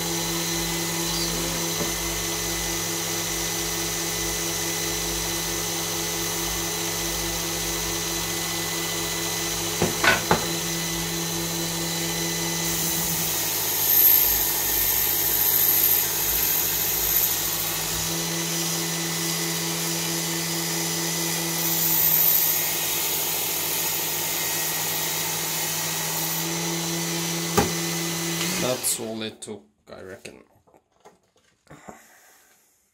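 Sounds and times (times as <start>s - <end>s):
belt sharpener running: 0.0s - 29.1s
steel hissing on abrasive belt: 12.5s - 18.1s, 21.5s - 26.5s.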